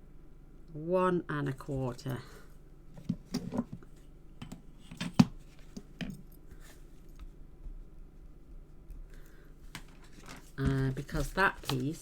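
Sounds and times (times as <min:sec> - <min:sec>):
paper tapping and rustling: 0:09.7 - 0:12.0.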